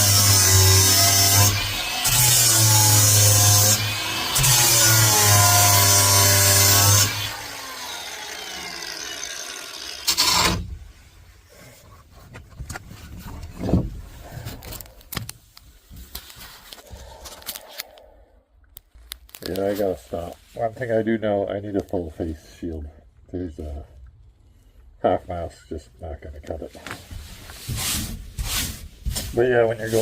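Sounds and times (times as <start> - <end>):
power sander running: 1.0 - 10.6.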